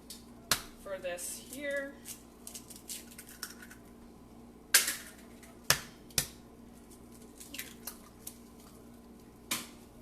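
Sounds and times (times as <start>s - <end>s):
eggs cracking against a bowl: 1.5s - 3.9s, 4.7s - 9.8s.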